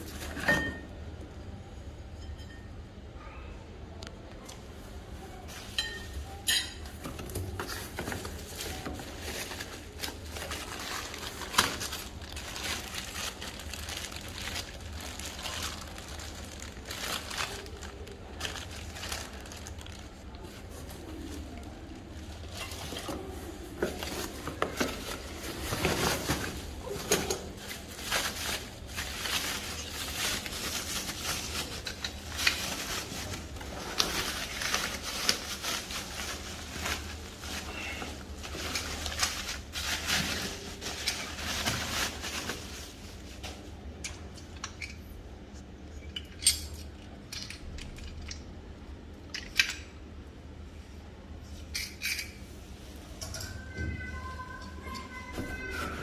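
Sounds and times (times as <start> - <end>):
metal parts clinking and rattling: 46.0 - 48.4.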